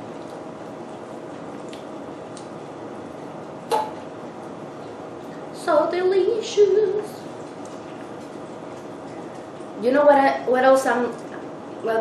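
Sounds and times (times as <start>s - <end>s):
wet chewing: 0.1s - 2.6s, 7.3s - 9.8s.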